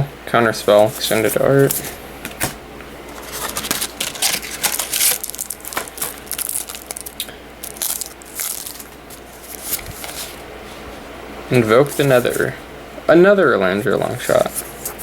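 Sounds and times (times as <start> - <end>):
cards rustling: 0.7 - 12.6, 13.9 - 15.0
wrapper crinkling and tearing: 3.1 - 10.4.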